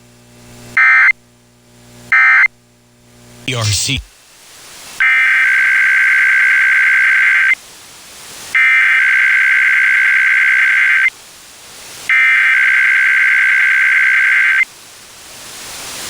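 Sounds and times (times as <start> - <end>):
buzzing digital data tones: 5.3 - 7.6, 8.6 - 11.1, 12.1 - 14.6.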